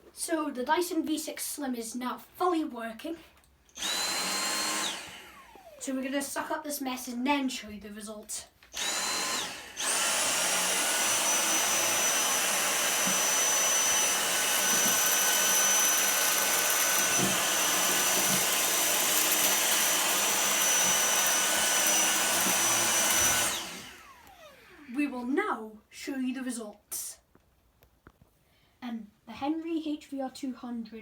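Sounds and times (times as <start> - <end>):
vacuum cleaner motor whine: 3.8 - 5.9, 8.7 - 24.9.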